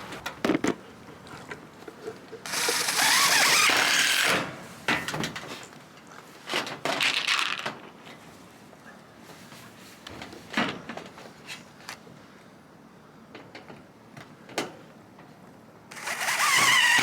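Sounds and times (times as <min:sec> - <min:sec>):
power drill driving screw into wood: 0:02.5 - 0:04.5, 0:15.9 - 0:17.0.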